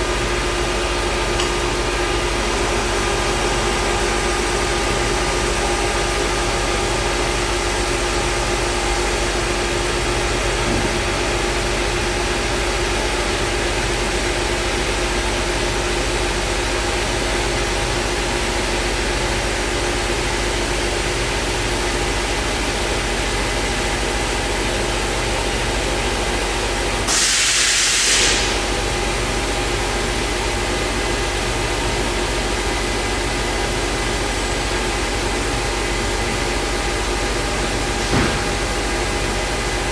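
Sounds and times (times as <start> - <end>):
loud hiss: 27.1 - 28.8.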